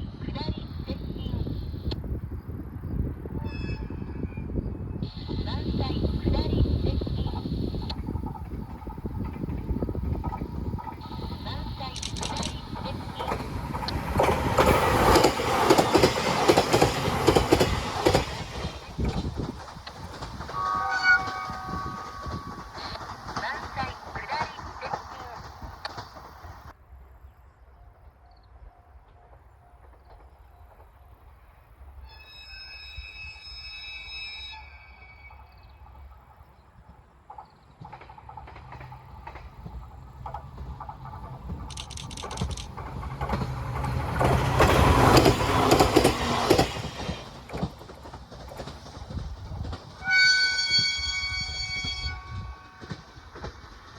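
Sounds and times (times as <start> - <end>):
train rumble: 0.0 - 32.0, 35.3 - 53.9
train warning whistle: 3.4 - 4.2, 20.6 - 23.0, 32.1 - 35.5, 50.0 - 52.9
train wheels clattering over rail joints: 8.1 - 26.7, 36.8 - 53.9.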